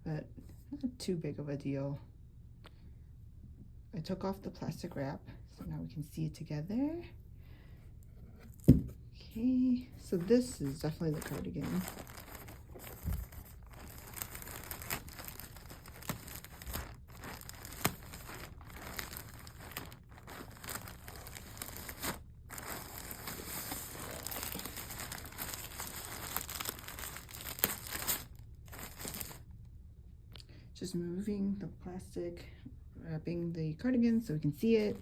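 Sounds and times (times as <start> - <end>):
plastic wrapping crinkling: 10.0 - 29.4, 34.7 - 35.0.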